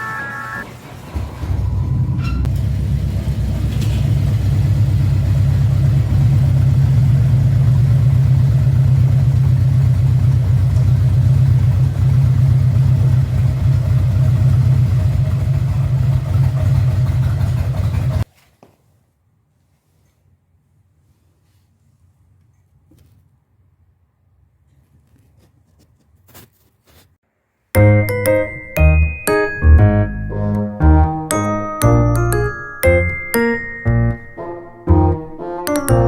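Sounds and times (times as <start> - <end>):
motorcycle engine starting and idling: 0.6 - 18.3.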